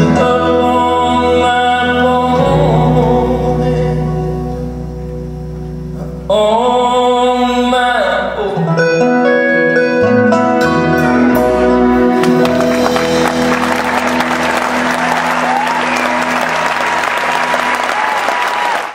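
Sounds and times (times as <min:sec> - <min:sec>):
live band holding a chord: 0:00.0 - 0:18.9
audience applause: 0:12.2 - 0:18.9.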